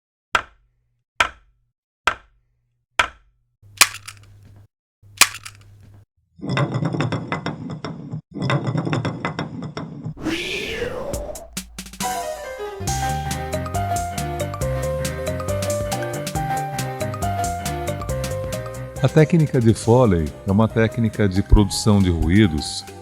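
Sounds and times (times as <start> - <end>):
rising swoosh: 10.1 - 12.2.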